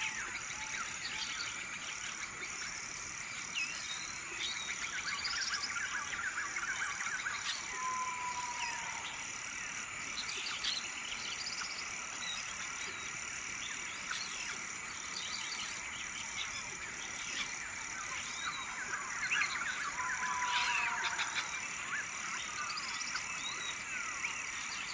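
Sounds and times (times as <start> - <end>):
high insect trill: 0.0 - 24.9
frog calls: 14.0 - 24.9.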